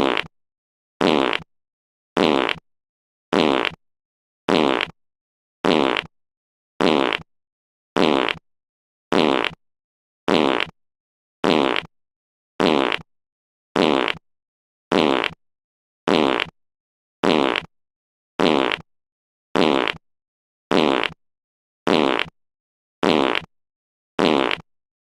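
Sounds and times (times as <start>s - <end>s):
fart sound effect: 0.0s - 0.3s, 1.0s - 1.5s, 2.2s - 2.6s, 3.3s - 3.8s, 4.5s - 5.0s, 5.6s - 6.1s, 6.8s - 7.3s, 8.0s - 8.4s, 9.1s - 9.6s, 10.3s - 10.7s, 11.4s - 11.9s, 12.6s - 13.0s, 13.8s - 14.2s, 14.9s - 15.4s, 16.1s - 16.5s, 17.2s - 17.7s, 18.4s - 18.8s, 19.6s - 20.0s, 20.7s - 21.2s, 21.9s - 22.3s, 23.0s - 23.5s, 24.2s - 24.6s.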